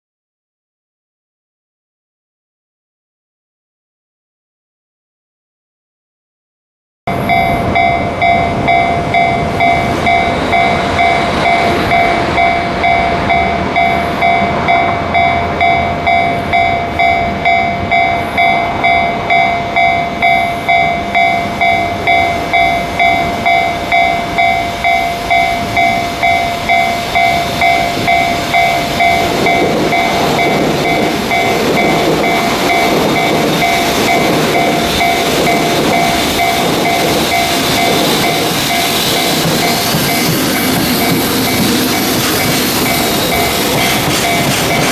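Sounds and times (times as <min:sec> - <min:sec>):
freight train rail clatter: 0:07.1 - 0:44.9
level crossing bell ringing: 0:07.1 - 0:44.9.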